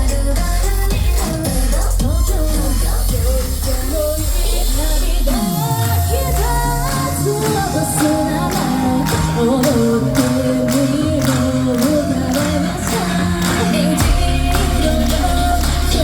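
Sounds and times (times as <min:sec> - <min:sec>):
pop song with female singing: 0:00.0 - 0:16.0
steady drum beat: 0:00.0 - 0:16.0.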